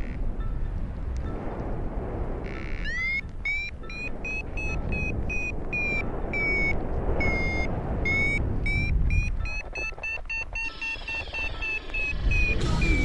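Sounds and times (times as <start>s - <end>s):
wind noise on microphone: 0.0s - 13.0s
variometer beeping: 2.7s - 13.0s.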